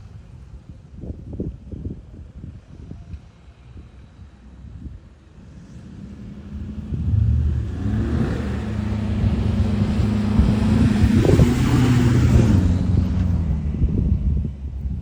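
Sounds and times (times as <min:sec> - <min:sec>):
truck engine running under load: 0:04.4 - 0:15.0.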